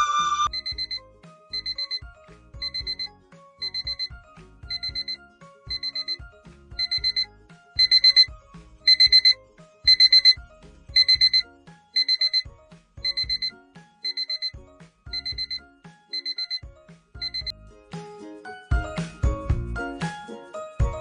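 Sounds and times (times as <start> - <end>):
digital alarm clock beeping: 0.4 - 1.0, 1.6 - 2.0, 2.6 - 6.2, 6.8 - 8.3, 8.9 - 11.4, 12.0 - 15.6, 16.2 - 16.6, 17.2 - 17.5
background music: 0.4 - 21.0.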